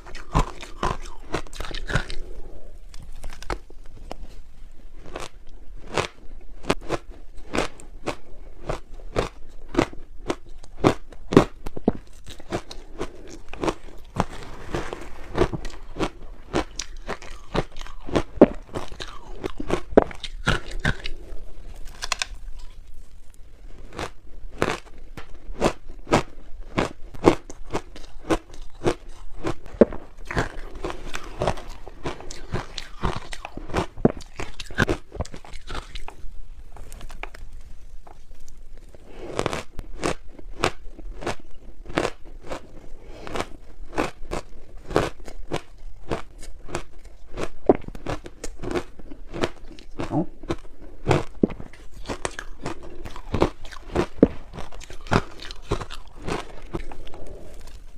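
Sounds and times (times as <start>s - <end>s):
crunching ice between teeth: 0.0s - 2.3s, 15.3s - 22.9s, 23.8s - 36.2s, 39.4s - 57.8s.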